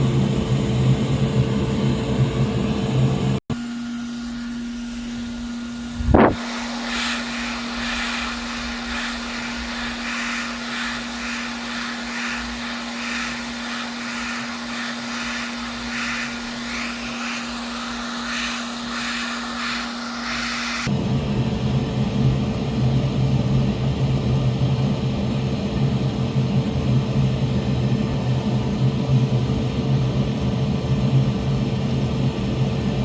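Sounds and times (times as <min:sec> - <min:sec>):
electric blower motor humming: 0:00.0 - 0:21.6.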